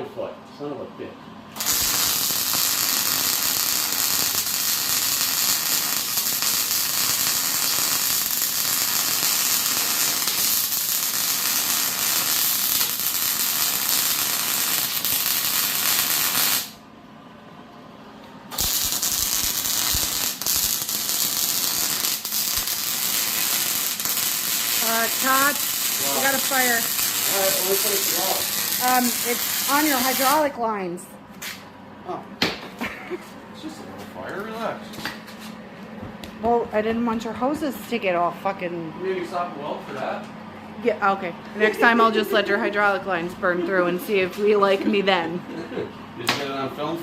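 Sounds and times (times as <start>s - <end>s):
welding arc crackling and hissing: 1.6s - 16.8s, 18.5s - 30.6s.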